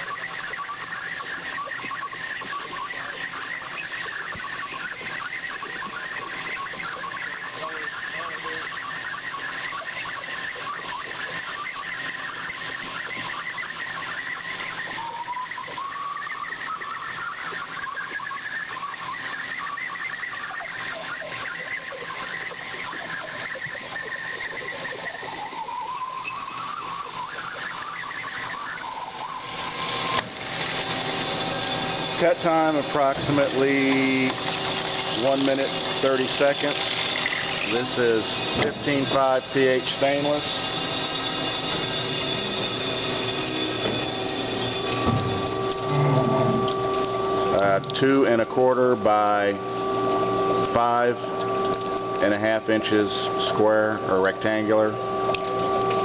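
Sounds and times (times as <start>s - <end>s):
bandsaw cutting steel: 29.8s - 47.0s
high squeaks: 30.8s - 48.4s.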